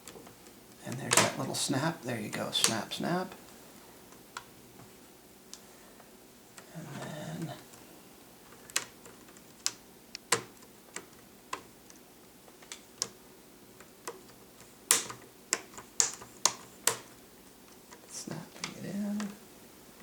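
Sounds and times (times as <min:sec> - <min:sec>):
plastic clips snapping: 0:01.0 - 0:01.4, 0:12.6 - 0:13.2, 0:13.9 - 0:17.1.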